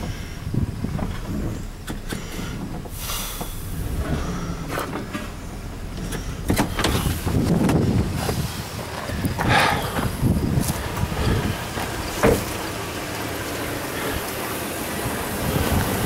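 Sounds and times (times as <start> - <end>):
sharp engine knocks: 0.0 - 8.4, 10.8 - 13.5
truck engine running: 0.0 - 16.0.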